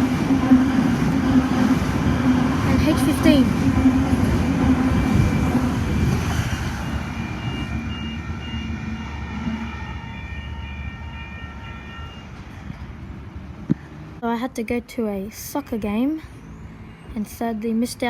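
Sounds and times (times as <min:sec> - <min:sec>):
electric train rumbling past: 0:00.0 - 0:14.2.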